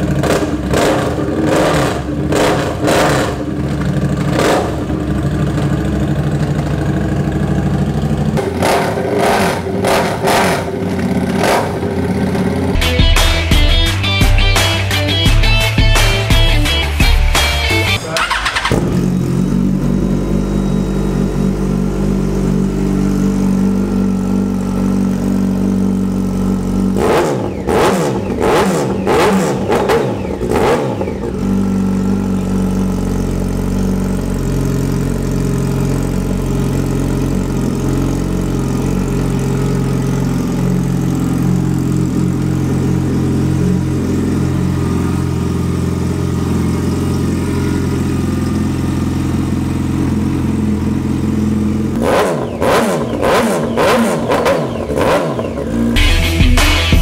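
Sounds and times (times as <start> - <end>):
motorcycle engine idling: 0.0 - 57.0
motorcycle throttle blips: 18.0 - 56.0.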